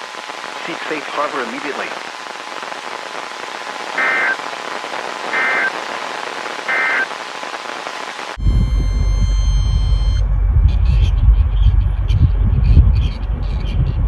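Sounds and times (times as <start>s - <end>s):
radio hiss: 0.0s - 10.2s
buzzing two-tone digital data: 4.0s - 7.3s, 8.2s - 10.3s.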